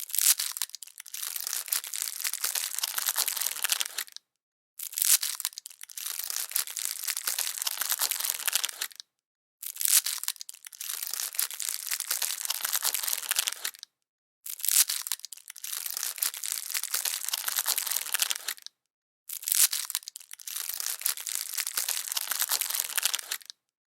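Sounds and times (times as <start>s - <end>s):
plastic candy wrapper crinkling: 0.0s - 4.2s, 4.8s - 9.0s, 9.6s - 13.9s, 14.5s - 18.7s, 19.3s - 23.6s.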